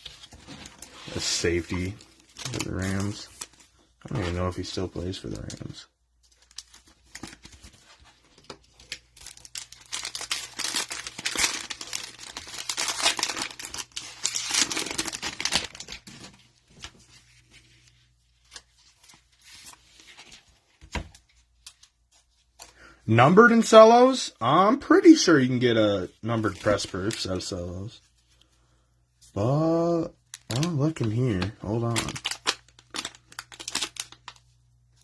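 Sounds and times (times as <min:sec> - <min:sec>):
cellophane wrapper crinkling: 0:00.0 - 0:16.6, 0:30.3 - 0:35.0.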